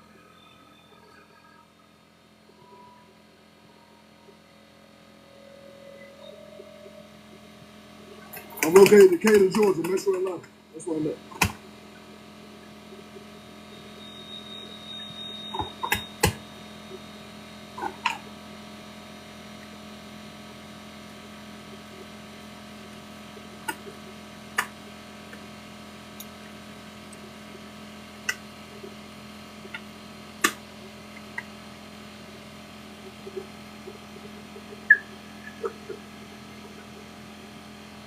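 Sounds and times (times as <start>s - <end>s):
steady low hum: 0.0s - 38.0s.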